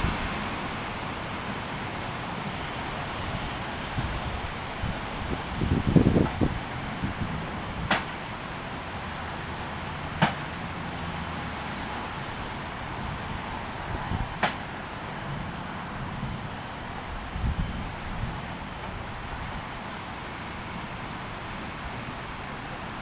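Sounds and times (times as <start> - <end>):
storm wind and rain hissing: 0.0 - 23.0
wind gusts buffeting microphone: 3.0 - 7.9, 16.1 - 19.5.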